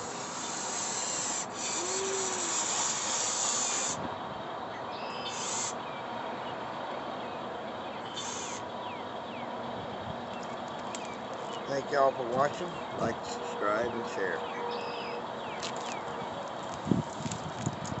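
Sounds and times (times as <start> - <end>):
toy excavator scraping and hissing: 0.0 - 4.0, 5.2 - 5.8, 8.1 - 8.6.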